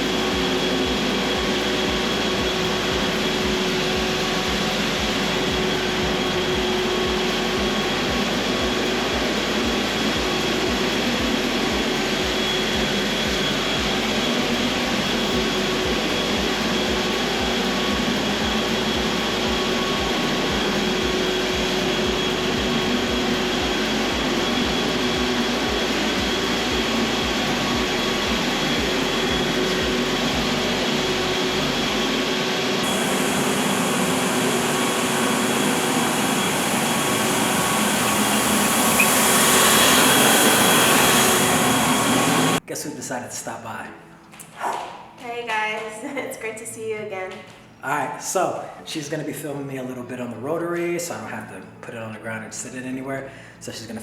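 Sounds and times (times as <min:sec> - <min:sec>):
floor machine motor drone: 0:00.0 - 0:42.6.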